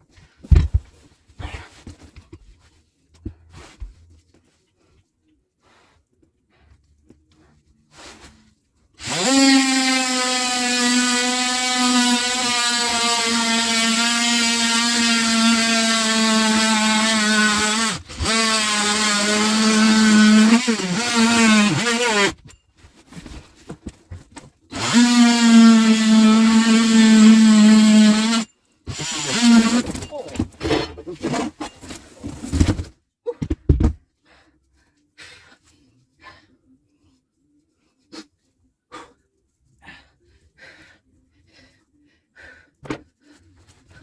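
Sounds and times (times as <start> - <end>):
electric drill motor whine: 9.0 - 22.4, 24.7 - 30.0.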